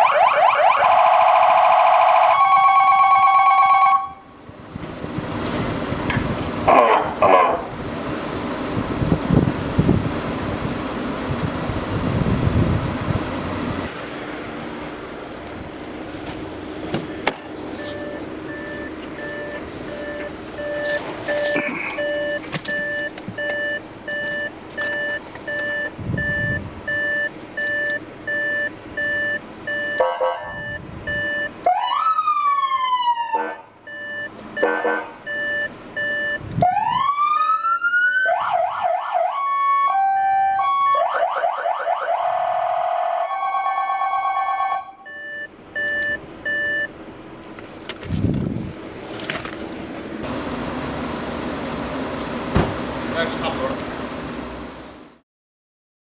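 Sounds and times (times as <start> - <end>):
electronic siren: 0.0 - 4.3, 36.2 - 45.2.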